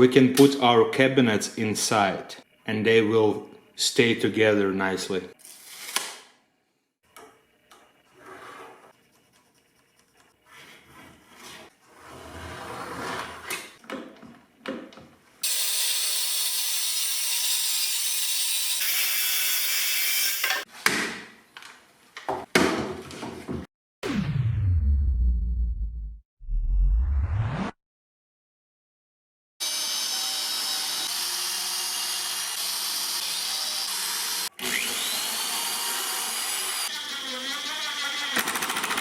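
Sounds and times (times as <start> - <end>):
plywood scraping on bench: 10.4 - 13.8
power saw cutting plywood: 29.6 - 39.0.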